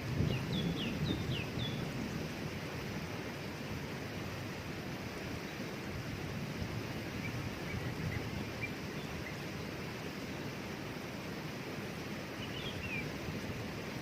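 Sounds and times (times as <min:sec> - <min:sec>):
waterfall rushing: 0:00.0 - 0:14.0
faint high bird chirps: 0:00.2 - 0:01.9, 0:12.4 - 0:13.2.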